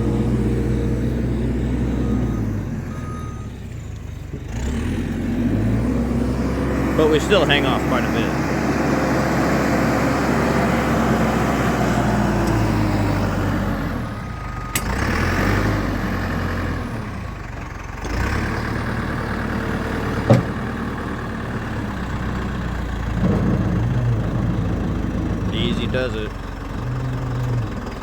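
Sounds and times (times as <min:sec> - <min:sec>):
backhoe engine running: 0:00.0 - 0:28.0.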